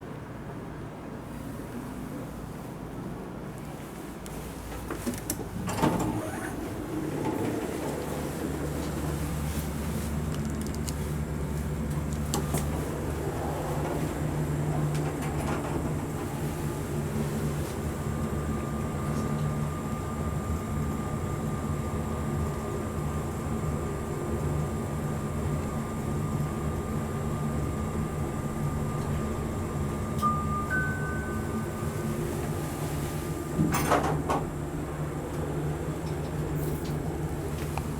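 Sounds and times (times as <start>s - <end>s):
elevator drive machinery hum: 0.0s - 37.9s
faint high whine: 30.2s - 32.5s.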